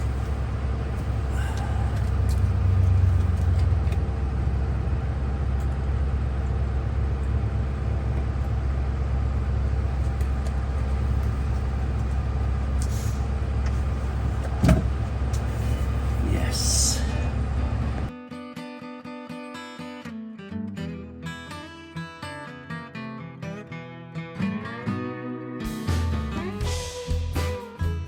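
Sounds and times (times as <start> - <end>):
diesel engine droning: 0.0 - 18.1.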